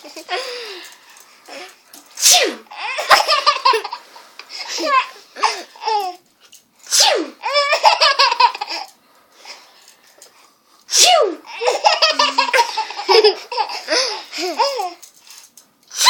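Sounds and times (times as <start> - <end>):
person sneezing: 2.2 - 3.3, 6.9 - 7.4, 10.9 - 11.5
baby laughing: 2.7 - 4.1, 5.0 - 6.2, 7.4 - 8.9, 11.4 - 15.0.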